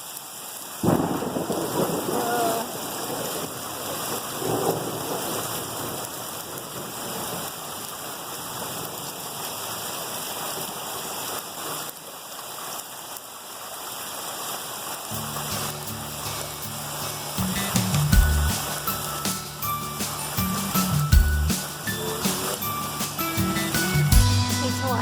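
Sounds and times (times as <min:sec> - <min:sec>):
heavy rain falling: 0:00.0 - 0:25.0
thunder rumbling: 0:00.8 - 0:07.4.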